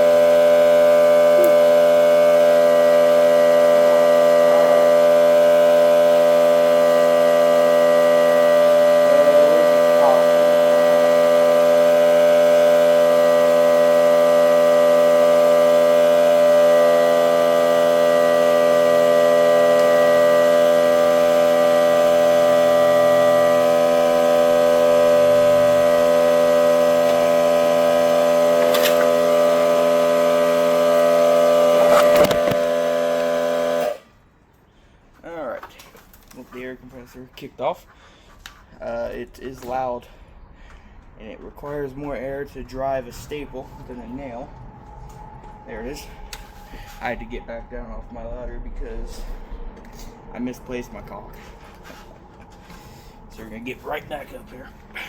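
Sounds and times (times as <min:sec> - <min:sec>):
air compressor humming: 0:00.0 - 0:34.2, 0:37.9 - 0:55.0.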